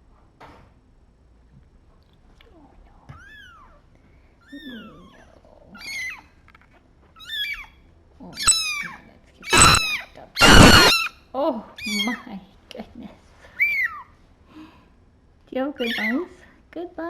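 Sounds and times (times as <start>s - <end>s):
kitten mewing: 9.5s - 11.1s.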